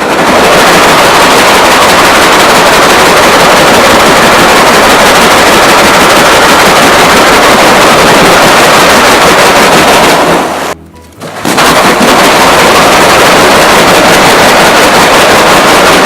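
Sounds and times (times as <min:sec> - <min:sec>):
simulated heavy rain patter: 0:00.0 - 0:10.8, 0:11.4 - 0:16.0.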